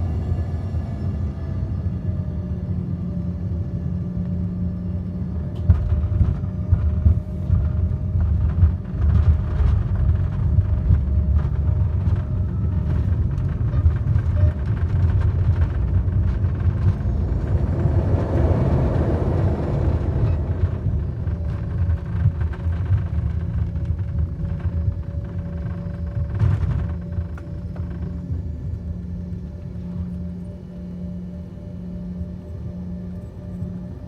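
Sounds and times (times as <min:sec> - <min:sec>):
airliner engine drone: 0:00.0 - 0:34.0
rattling rumble on touchdown: 0:05.5 - 0:28.9
rushing noise: 0:16.4 - 0:23.0.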